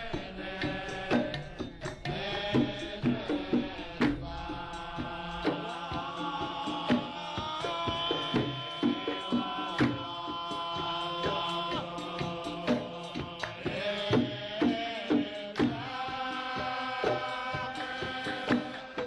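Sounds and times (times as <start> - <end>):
chant-like melody: 0.0 - 19.0
hand drum percussion: 0.0 - 19.0.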